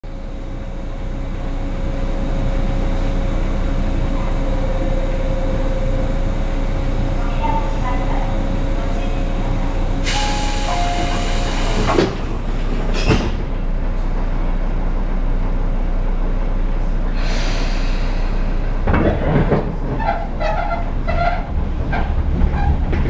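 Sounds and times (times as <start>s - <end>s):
train car rumble: 0.0s - 23.0s
loud air hiss: 10.0s - 12.0s, 17.2s - 18.6s.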